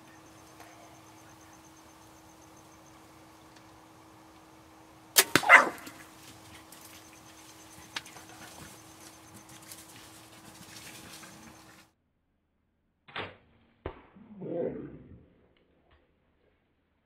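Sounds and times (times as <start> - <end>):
arrow hitting: 5.2 - 6.0
bow release crack: 5.2 - 6.0
faint clicks and rustles: 6.1 - 11.8.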